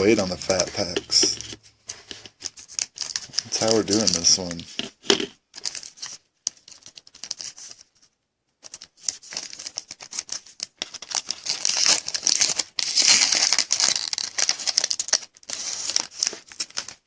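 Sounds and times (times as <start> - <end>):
foil wrapper crinkling and tearing: 2.1 - 4.6, 5.6 - 7.9, 8.7 - 17.0.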